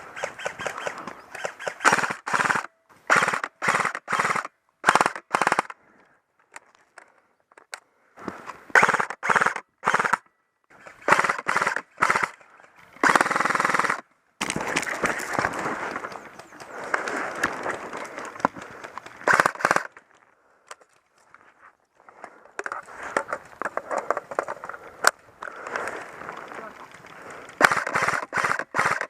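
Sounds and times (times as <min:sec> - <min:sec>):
airsoft rifle full-auto bursts: 0:00.2 - 0:05.8, 0:08.7 - 0:10.2, 0:10.8 - 0:12.4, 0:13.0 - 0:14.0, 0:19.2 - 0:19.9, 0:27.6 - 0:29.0.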